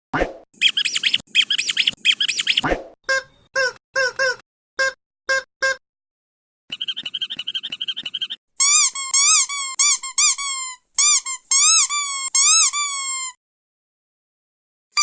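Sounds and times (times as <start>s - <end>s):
pitched squeaker squeals: 0.6s - 5.8s, 6.7s - 13.4s
dog toy squeaking: 6.7s - 13.3s.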